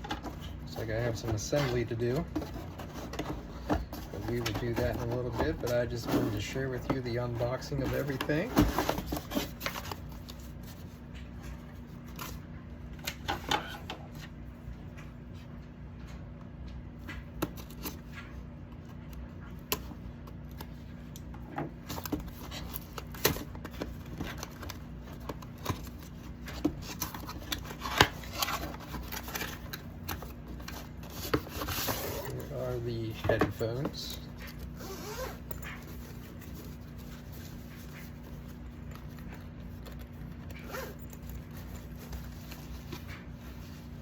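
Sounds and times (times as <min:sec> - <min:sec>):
packaging and parts being handled: 0:00.0 - 0:12.5, 0:20.6 - 0:44.0
steady low hum: 0:00.0 - 0:44.0.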